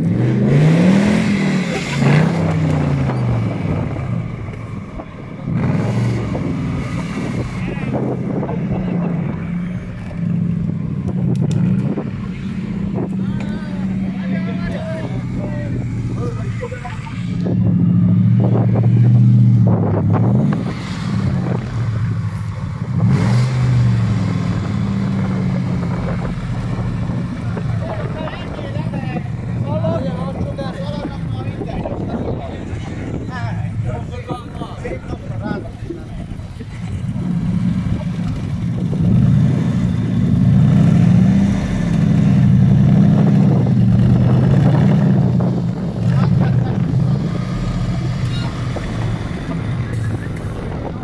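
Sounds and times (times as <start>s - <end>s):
off-road vehicle engine revving: 0.0s - 51.0s.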